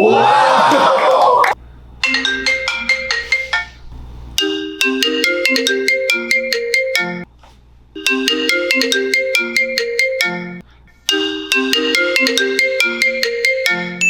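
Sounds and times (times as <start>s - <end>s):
marimba melody: 2.0s - 3.8s, 4.4s - 7.2s, 8.0s - 14.0s.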